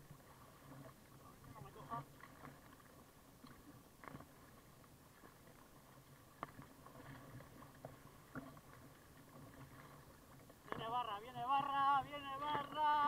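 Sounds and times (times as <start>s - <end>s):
faint water splashing: 0.0s - 13.0s.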